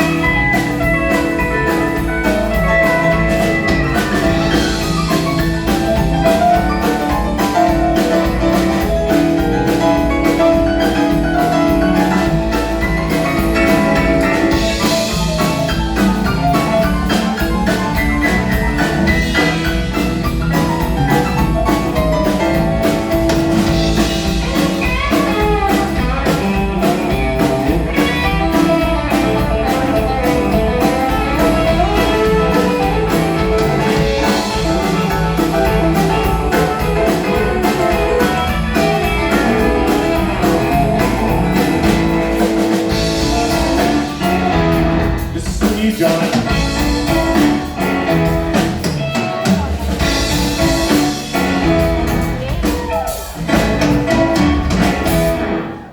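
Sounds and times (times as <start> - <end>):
country rock band playing: 0.0 - 55.9
drum kit steady beat: 0.0 - 55.9.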